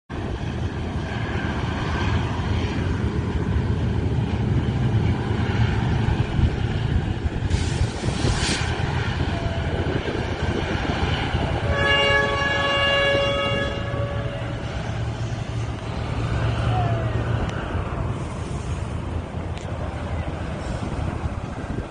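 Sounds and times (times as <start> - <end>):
train rumbling over bridge: 0.1 - 21.9
brief hiss: 7.5 - 8.9
train horn chord: 11.5 - 14.8.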